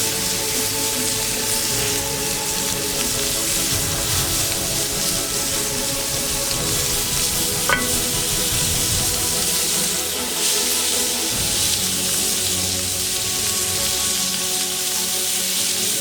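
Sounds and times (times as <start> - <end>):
food sizzling: 0.0 - 16.0
short clink: 7.7 - 8.2.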